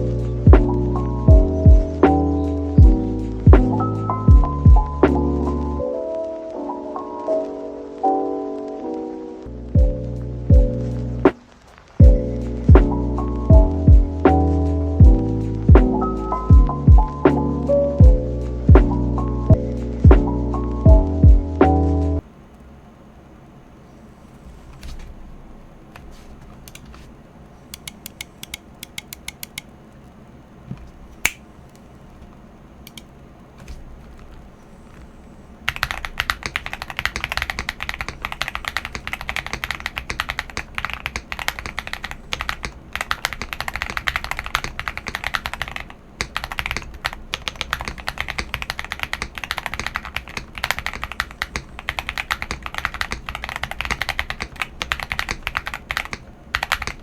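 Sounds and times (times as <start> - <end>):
mechanical keyboard typing: 26.0 - 27.0, 27.7 - 29.8, 32.8 - 34.4, 35.6 - 57.0.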